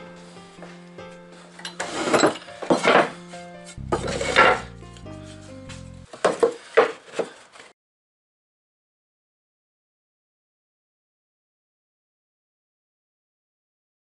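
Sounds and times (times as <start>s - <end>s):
background music: 0.0s - 6.1s
scraping strokes on wood: 1.4s - 7.7s.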